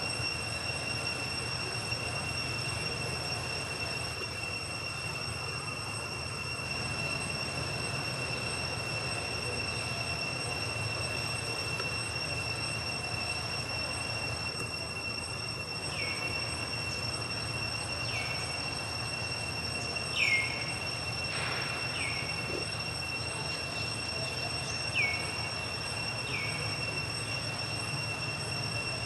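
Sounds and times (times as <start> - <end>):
insects droning: 0.0 - 29.0.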